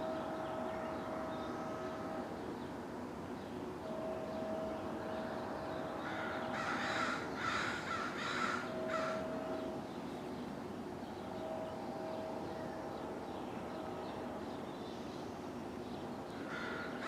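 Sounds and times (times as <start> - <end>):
crow cawing: 6.0 - 9.2, 16.5 - 17.0.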